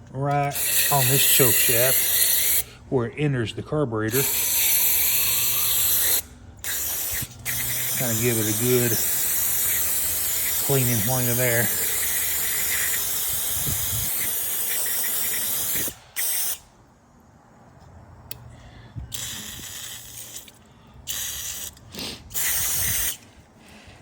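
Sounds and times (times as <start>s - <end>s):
aerosol spraying: 0.5s - 2.6s, 4.2s - 16.6s.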